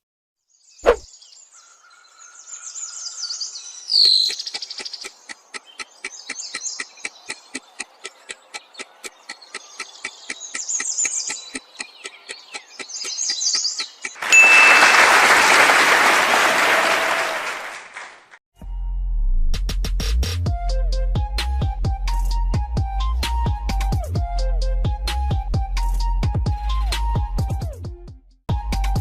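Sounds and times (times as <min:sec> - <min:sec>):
birds chirping: 0:00.6 - 0:16.0
fast ticking: 0:04.3 - 0:14.2
applause: 0:14.2 - 0:18.4
short ding: 0:14.3 - 0:15.0.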